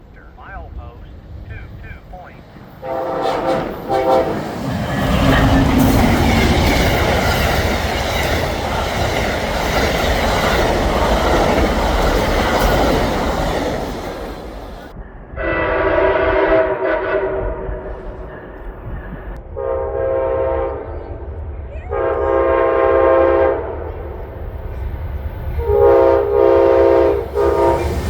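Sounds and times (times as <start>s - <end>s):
train passing with wheel rumble: 0.0s - 28.0s
locomotive horn blasts: 2.8s - 4.4s, 15.4s - 17.6s, 21.9s - 23.7s, 25.6s - 28.0s.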